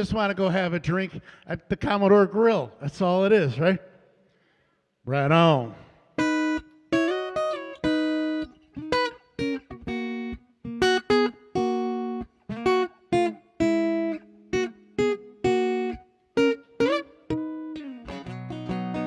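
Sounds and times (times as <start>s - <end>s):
acoustic guitar picking: 6.2s - 19.0s.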